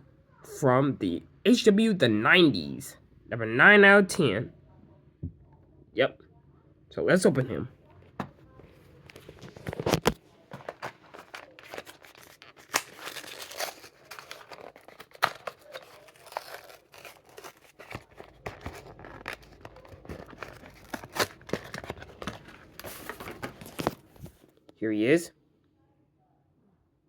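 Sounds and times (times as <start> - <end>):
plastic blister crinkling: 8.6 - 24.5
card tearing: 9.2 - 24.4.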